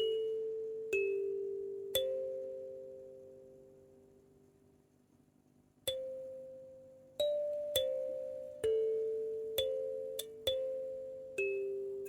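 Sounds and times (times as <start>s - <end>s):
kalimba plucked notes: 7.2s - 12.0s.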